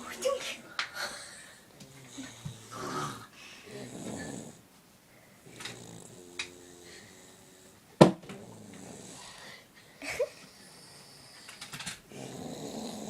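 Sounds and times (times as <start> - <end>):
child snoring: 1.0 - 4.6, 5.4 - 9.6, 10.6 - 13.0.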